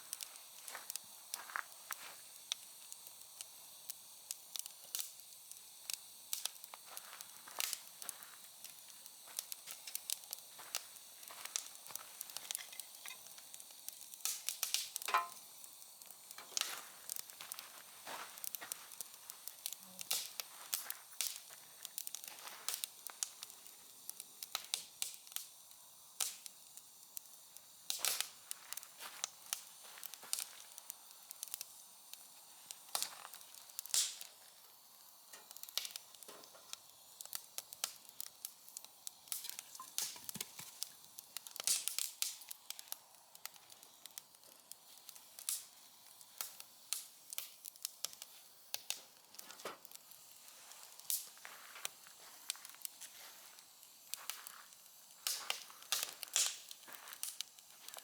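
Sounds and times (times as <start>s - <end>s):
faint steady hiss: 0.0s - 58.0s
wood fire crackling: 0.0s - 58.0s.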